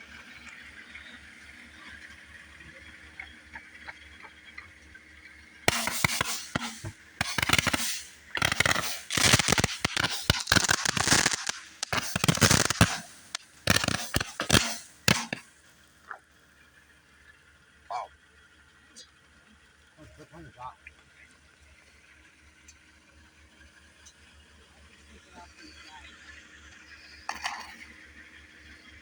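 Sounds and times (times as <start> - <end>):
fireworks crackling and popping: 5.6 - 15.8, 27.2 - 27.9.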